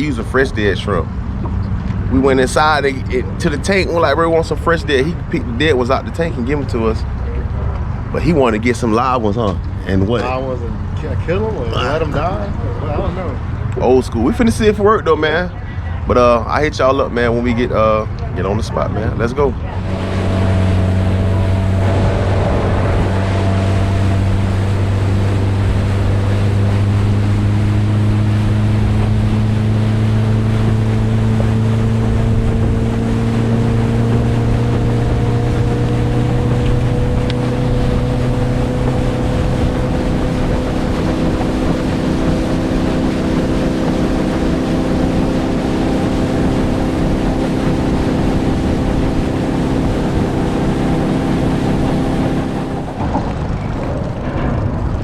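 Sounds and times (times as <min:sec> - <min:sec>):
motorboat engine running: 0:00.0 - 0:55.0
water rushing: 0:00.0 - 0:55.0
wind rushing: 0:18.7 - 0:55.0.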